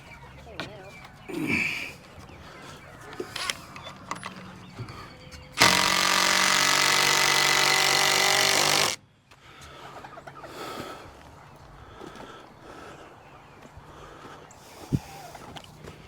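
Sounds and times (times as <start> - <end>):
power tool running: 5.6 - 9.0.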